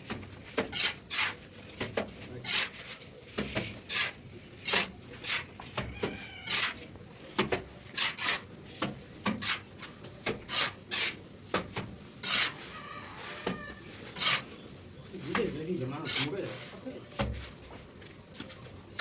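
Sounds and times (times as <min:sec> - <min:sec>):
plastering tool scraping wet plaster: 0:00.5 - 0:05.5, 0:07.8 - 0:08.5, 0:09.2 - 0:11.2, 0:12.2 - 0:12.7, 0:14.0 - 0:14.7, 0:15.3 - 0:17.7.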